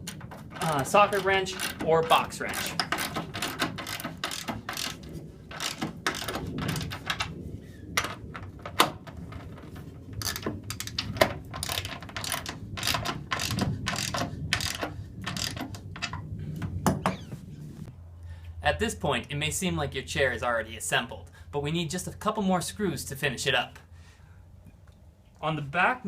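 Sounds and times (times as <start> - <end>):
ratchet wrench clicking: 0.0 - 7.3, 10.2 - 16.2.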